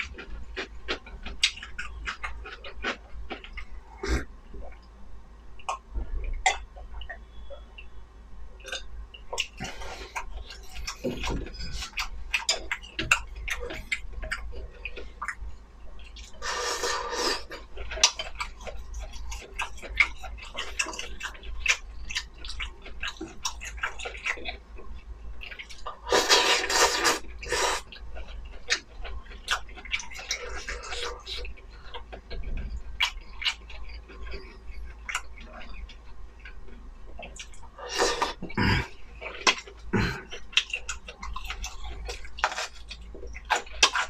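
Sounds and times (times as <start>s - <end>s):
wet chewing with mouth clicks: 0.0s - 4.9s, 8.6s - 44.0s
noodles slurped: 26.0s - 27.9s.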